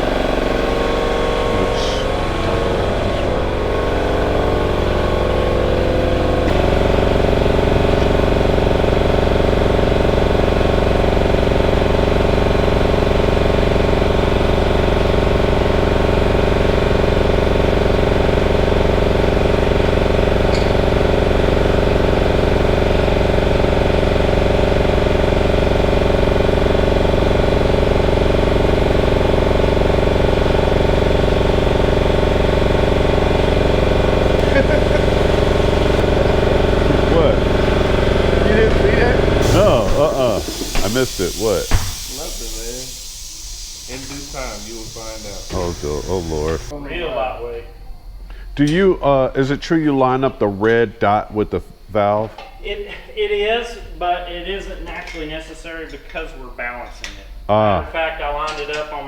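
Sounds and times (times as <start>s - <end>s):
machine motor humming: 0.0s - 46.8s.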